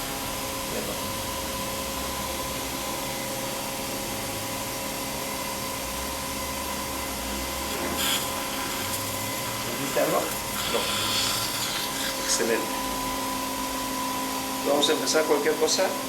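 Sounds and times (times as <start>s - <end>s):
machine hiss: 7.6s - 12.6s.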